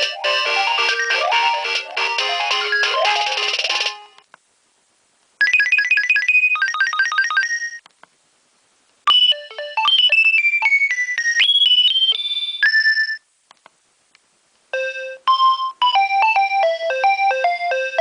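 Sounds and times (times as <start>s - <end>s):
mobile phone ringtones: 0.0s - 3.9s, 5.4s - 7.8s, 9.1s - 13.3s, 14.8s - 18.0s.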